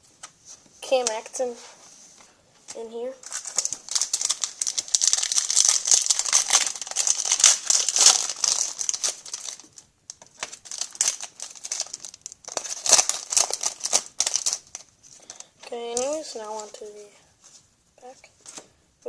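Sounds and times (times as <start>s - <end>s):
card pack wrapper crinkling: 3.2s - 16.9s.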